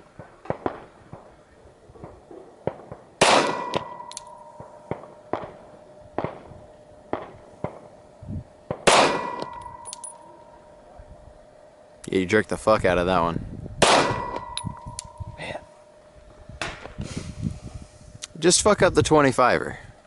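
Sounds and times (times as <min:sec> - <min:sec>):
distant gunfire cracks: 0:00.2 - 0:01.3, 0:02.0 - 0:05.6, 0:06.2 - 0:06.5, 0:07.1 - 0:07.9, 0:08.7 - 0:09.6, 0:13.8 - 0:14.4
loud pistol shots ringing: 0:02.6 - 0:05.6, 0:08.7 - 0:10.6, 0:13.8 - 0:15.2.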